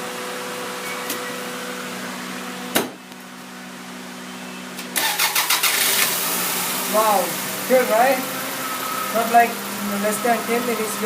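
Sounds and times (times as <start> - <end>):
car engine cranking and starting: 4.8 - 11.0
steady tonal hum: 6.2 - 11.0.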